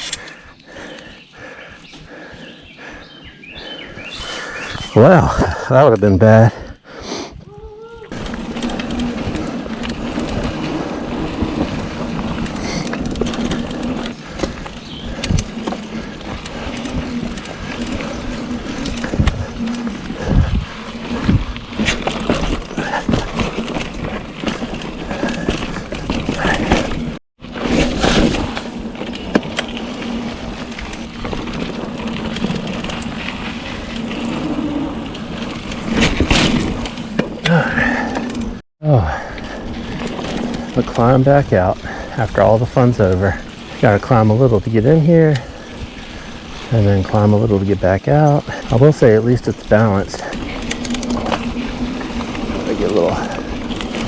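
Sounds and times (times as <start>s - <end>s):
bike tyres on dirt trail: 0.0s - 54.0s
bike rattles and knocks: 7.8s - 54.0s.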